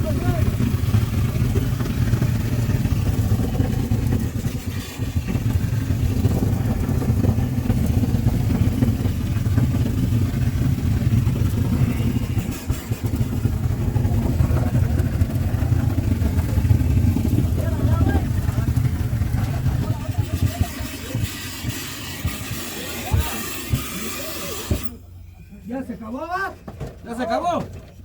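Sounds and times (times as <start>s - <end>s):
large engine running: 0.0s - 28.0s.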